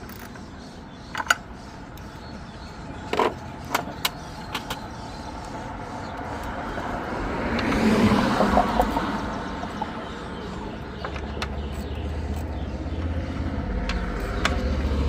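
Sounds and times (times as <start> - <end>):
vehicle passing: 5.5 - 15.0.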